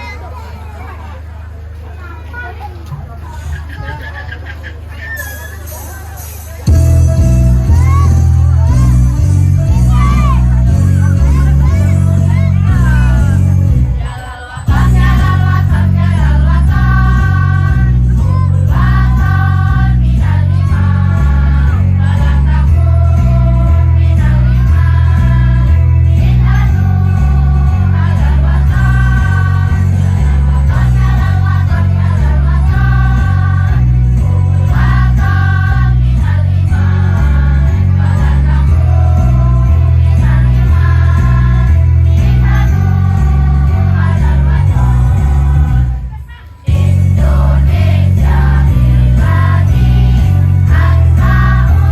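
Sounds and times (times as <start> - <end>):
accompaniment with pulsing bass: 2.9 - 51.9
choir singing: 6.8 - 51.9.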